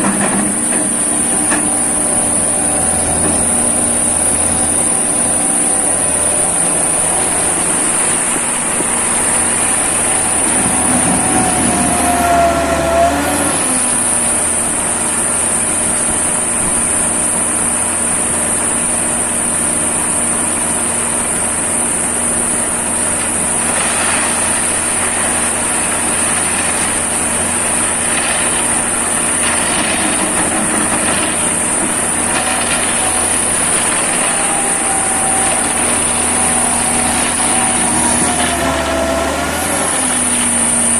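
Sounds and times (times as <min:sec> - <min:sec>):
knocks and clatters: 0:00.0 - 0:02.3, 0:29.4 - 0:34.8
diesel engine running: 0:00.0 - 0:40.9
falling whine: 0:00.0 - 0:40.9.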